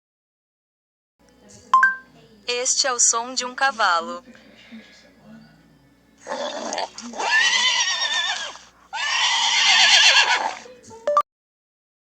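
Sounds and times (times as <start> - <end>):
click and tone: 1.8 - 2.1
horse whinnying: 6.2 - 10.7.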